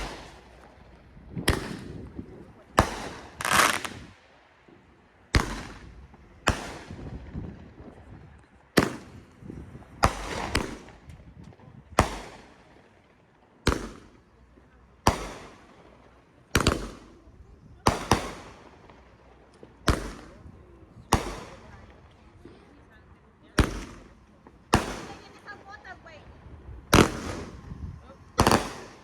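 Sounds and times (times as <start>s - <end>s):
fireworks exploding: 0.0s - 29.0s.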